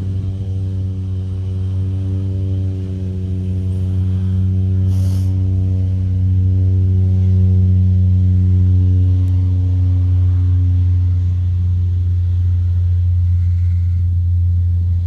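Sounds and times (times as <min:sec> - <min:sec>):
plane engine and propeller drone: 0:00.0 - 0:15.0
brief hiss: 0:04.9 - 0:05.3.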